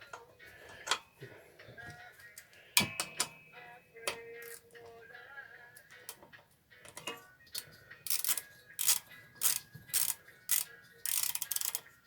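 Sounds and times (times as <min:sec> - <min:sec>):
socket ratchet clicking: 0:06.9 - 0:11.9.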